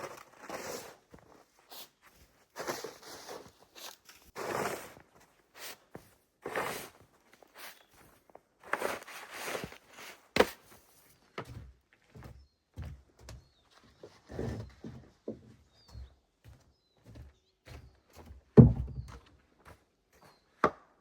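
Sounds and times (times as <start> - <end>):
footsteps crunching through snow: 0.0 - 12.5.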